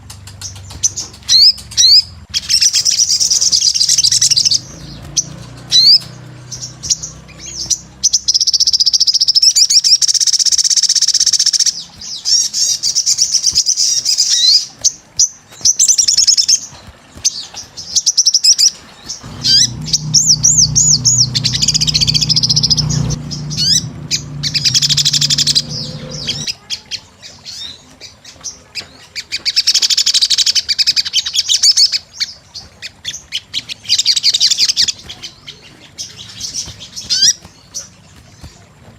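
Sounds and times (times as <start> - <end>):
bird singing fast high trills: 1.3 - 14.6, 19.2 - 26.5
low hum: 19.2 - 26.5.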